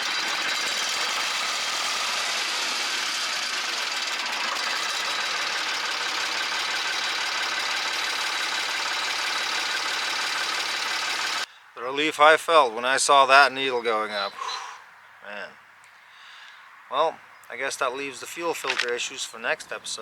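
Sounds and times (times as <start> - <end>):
diesel engine clattering: 0.0 - 11.5, 18.6 - 19.1.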